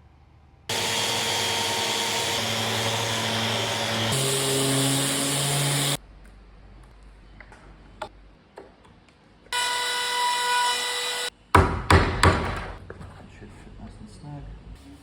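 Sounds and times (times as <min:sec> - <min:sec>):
power tool motor whining: 0:00.7 - 0:06.0.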